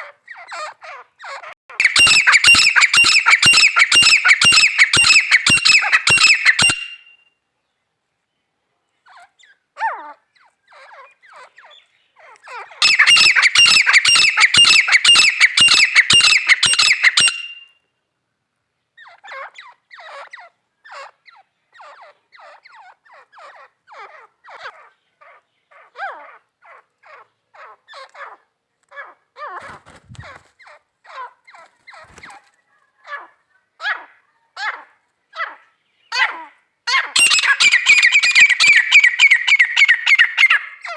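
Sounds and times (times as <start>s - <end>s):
francolin calling: 0.5s - 7.2s, 12.8s - 17.7s, 36.2s - 40.9s.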